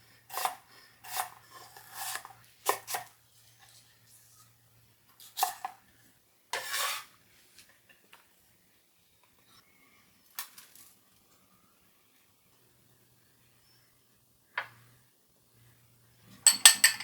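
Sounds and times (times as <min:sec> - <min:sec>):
knife scraping: 0:00.3 - 0:03.8, 0:06.5 - 0:07.1.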